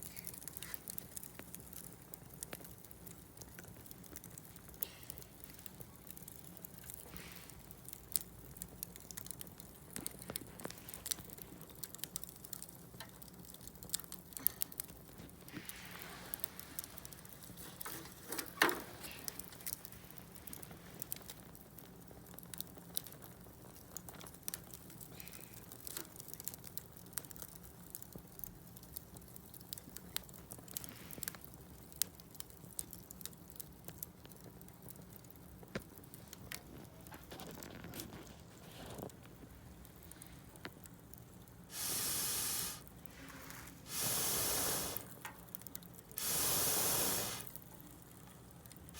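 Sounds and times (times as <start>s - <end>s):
fire hiss: 0.0s - 12.6s, 13.4s - 21.4s, 41.6s - 48.0s
bonfire crackling and popping: 0.0s - 48.9s.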